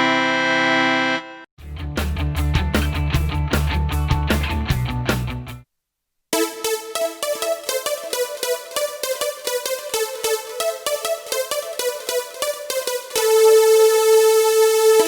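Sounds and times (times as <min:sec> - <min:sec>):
electronic keyboard synth notes: 0:06.4 - 0:15.0.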